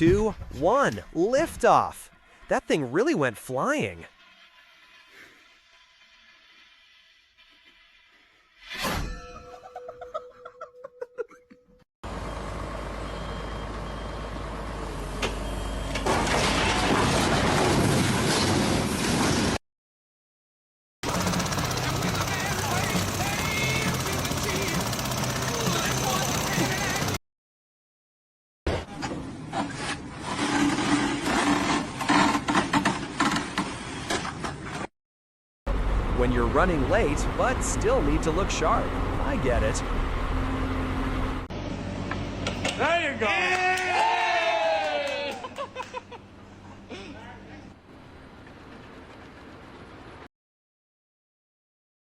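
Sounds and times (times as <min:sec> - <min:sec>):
rough scraping and rasping: 0:02.1 - 0:08.9, 0:29.5 - 0:33.0
faint alarm beeps: 0:12.3 - 0:14.3, 0:15.4 - 0:16.0
heavy machine running: 0:21.0 - 0:27.2.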